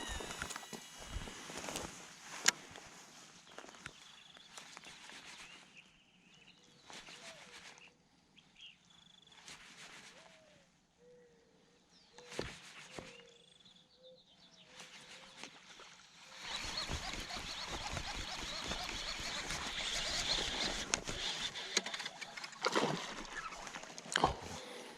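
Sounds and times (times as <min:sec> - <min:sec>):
birds chirping and calling: 0:16.3 - 0:24.9.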